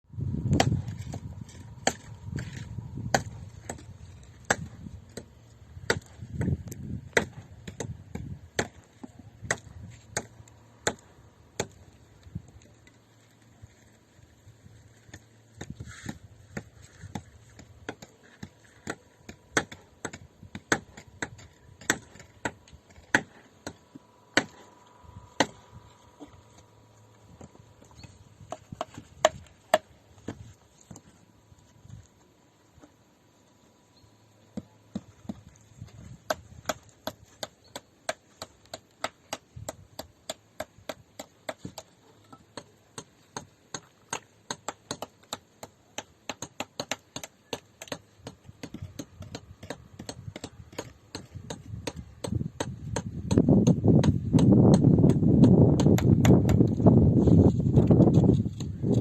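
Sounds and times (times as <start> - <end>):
sharp irregular knocks: 36.2 - 56.8.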